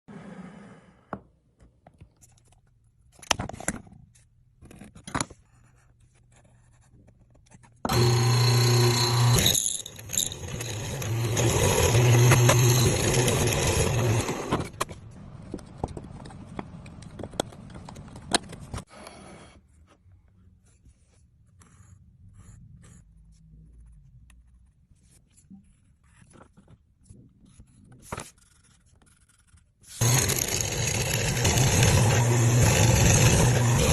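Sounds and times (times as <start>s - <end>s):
electric power tool humming: 7.9s - 14.6s, 30.0s - 33.9s.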